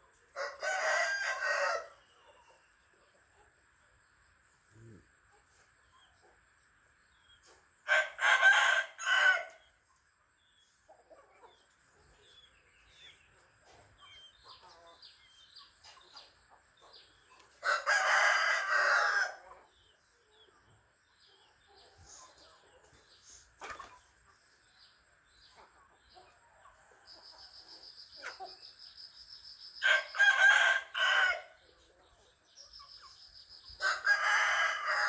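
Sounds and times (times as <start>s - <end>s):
chicken chirps and clucks: 0.0s - 35.0s
rooster crowing: 17.6s - 19.4s, 33.8s - 35.0s.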